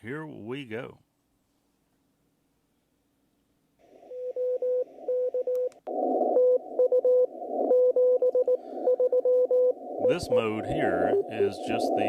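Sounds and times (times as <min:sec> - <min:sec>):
radio band hiss: 0:05.9 - 0:07.8, 0:09.7 - 0:12.0
surge of radio static: 0:05.9 - 0:12.0
morse code tone: 0:06.3 - 0:12.0.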